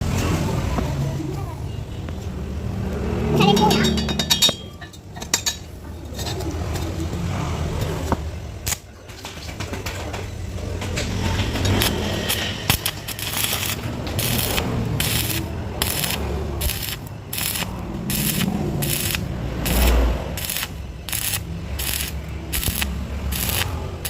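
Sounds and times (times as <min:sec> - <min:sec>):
metal clinking and scraping: 0:03.4 - 0:07.0, 0:08.7 - 0:24.0.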